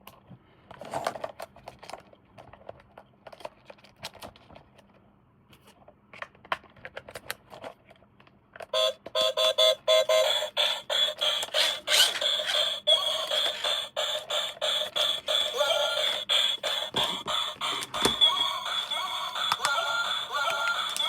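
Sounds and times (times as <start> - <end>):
plastic toy parts handled: 0.1 - 8.7, 11.4 - 12.6, 13.2 - 21.0
rapid electronic toy beeping: 8.8 - 21.0.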